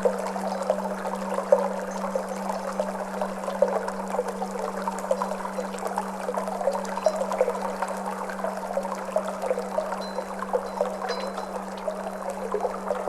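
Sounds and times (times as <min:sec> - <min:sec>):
trickling water: 0:00.0 - 0:13.0
singing bowl tone: 0:09.8 - 0:13.0.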